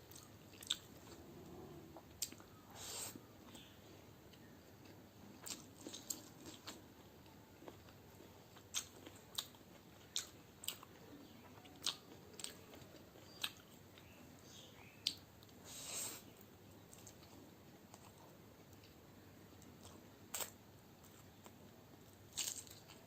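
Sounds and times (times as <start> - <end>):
person chewing crunchy food: 0.1 - 2.5, 4.4 - 10.9, 11.6 - 13.8, 19.8 - 21.5, 22.3 - 23.0.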